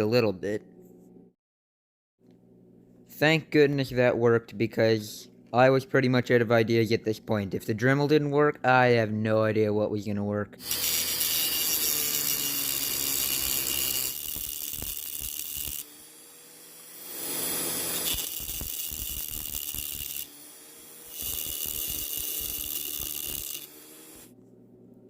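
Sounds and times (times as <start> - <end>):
rotary tool grinding metal: 10.6 - 24.3.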